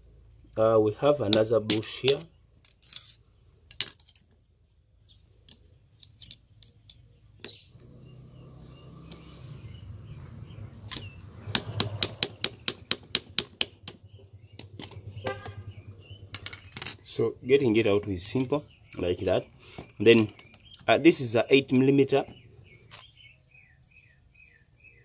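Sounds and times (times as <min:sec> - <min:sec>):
steady low hum: 0:00.0 - 0:21.6
metal parts and tools clinking: 0:01.6 - 0:04.4, 0:05.4 - 0:07.6, 0:16.3 - 0:17.2, 0:18.0 - 0:19.0.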